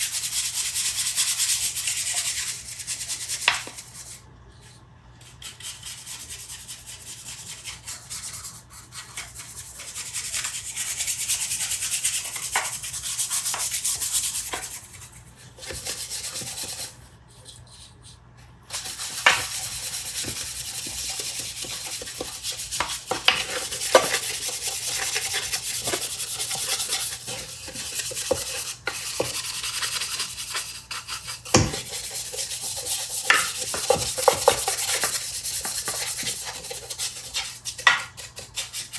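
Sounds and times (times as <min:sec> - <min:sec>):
sandpaper rubbing on wood: 0:18.8 - 0:38.9.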